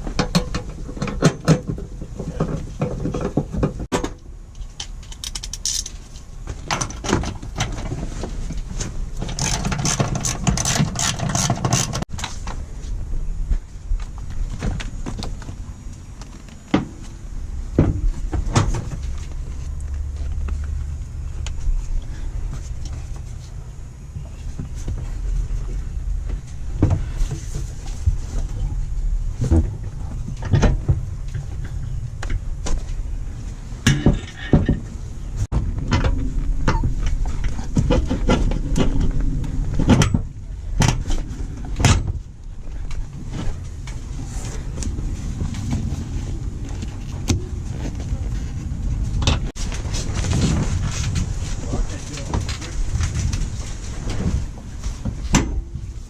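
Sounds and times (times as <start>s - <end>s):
knocks clanks and clicks of hardware: 0.0s - 8.0s, 8.8s - 12.3s, 33.8s - 34.9s
steady low hum: 0.0s - 56.0s.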